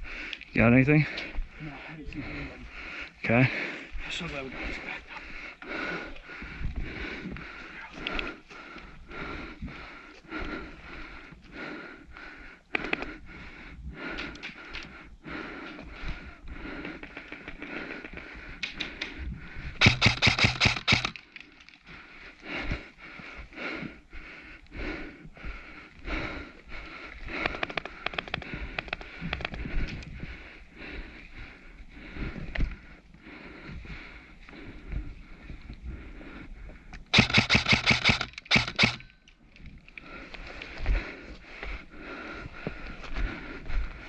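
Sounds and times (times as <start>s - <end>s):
airsoft rifle full-auto burst: 19.8s - 21.2s, 37.1s - 39.0s.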